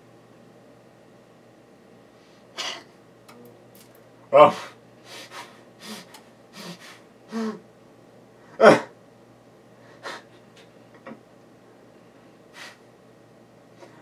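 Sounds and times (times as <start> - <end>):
man breathing: 4.6 - 7.6.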